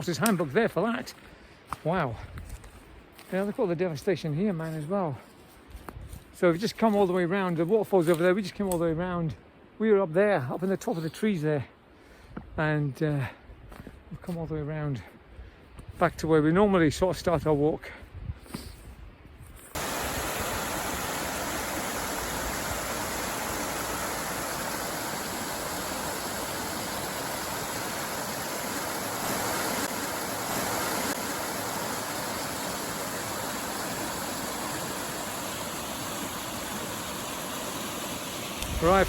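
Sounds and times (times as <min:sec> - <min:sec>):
waterfall rushing: 0:19.8 - 0:39.0.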